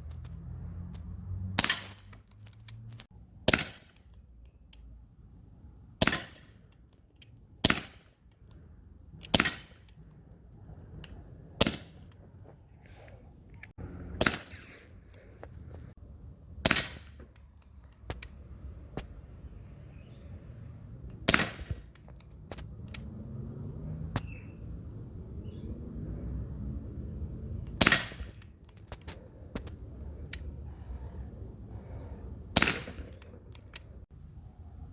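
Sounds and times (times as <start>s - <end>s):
bb pistol shots: 3.4s - 4.0s, 6.0s - 6.5s, 7.6s - 8.1s, 9.2s - 9.8s, 14.2s - 14.8s, 16.6s - 17.2s, 21.2s - 21.9s, 27.7s - 28.4s, 32.6s - 33.3s.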